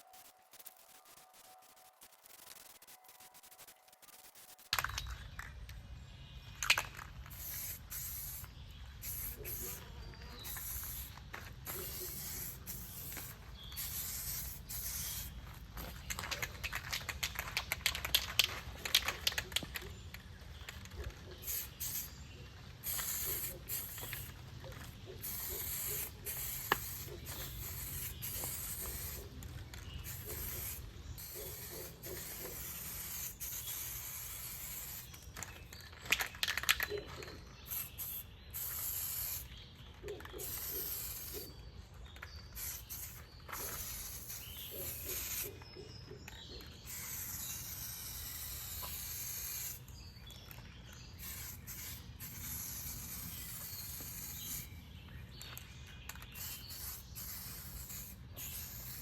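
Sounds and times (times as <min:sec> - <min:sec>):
aerosol spray can hissing: 0:07.3 - 0:17.2, 0:21.4 - 0:22.2, 0:22.8 - 0:24.4, 0:25.2 - 0:29.4, 0:30.0 - 0:35.2, 0:37.7 - 0:39.5, 0:40.4 - 0:41.5, 0:42.5 - 0:45.6, 0:46.9 - 0:49.9, 0:51.2 - 0:54.7, 0:56.4 - 0:59.0.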